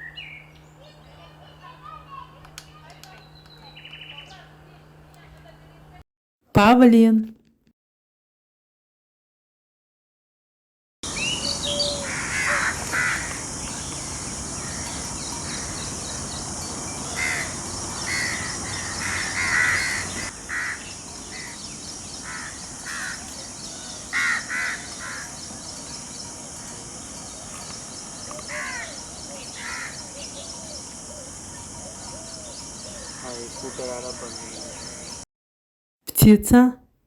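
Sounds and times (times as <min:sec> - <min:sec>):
peacock calling: 0:11.1 - 0:35.2
steady high hiss: 0:11.1 - 0:35.2.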